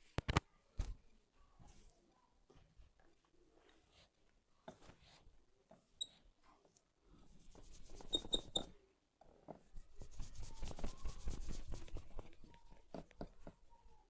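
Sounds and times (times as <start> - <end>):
hands rubbing oiled hair: 9.9 - 12.9.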